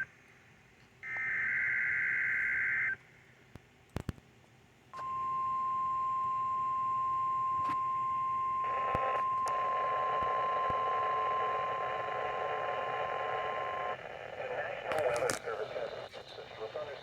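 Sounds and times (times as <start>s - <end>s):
radio static hiss: 8.6s - 17.0s.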